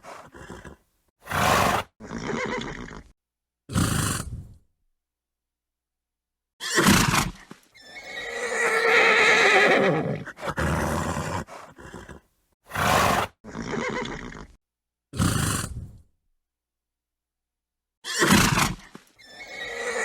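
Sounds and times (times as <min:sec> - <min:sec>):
horse snorting: 0:00.0 - 0:03.1, 0:03.7 - 0:04.6, 0:06.8 - 0:14.6, 0:15.2 - 0:16.0
horse neighing: 0:01.4 - 0:03.1, 0:07.8 - 0:12.2, 0:12.8 - 0:14.6, 0:19.2 - 0:20.0.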